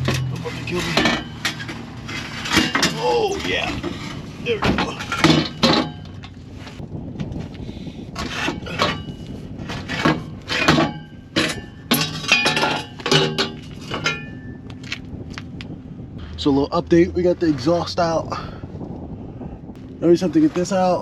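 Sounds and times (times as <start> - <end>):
loose metal parts clanking: 0.0 - 6.8, 8.2 - 15.0.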